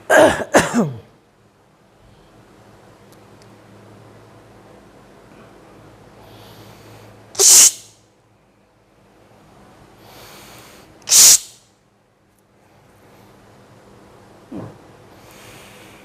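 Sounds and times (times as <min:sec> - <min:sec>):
soft in-breath: 0:06.2 - 0:07.2, 0:10.0 - 0:11.0, 0:15.1 - 0:16.0.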